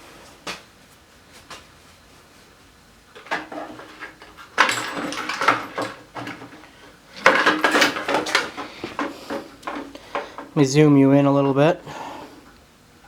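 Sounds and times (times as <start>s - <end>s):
metal tools clattering: 3.2s - 10.7s.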